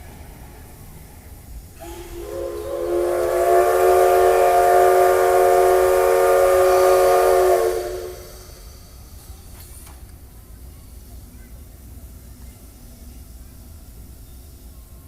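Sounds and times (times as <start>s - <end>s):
steam whistle chord blast: 1.8s - 8.8s.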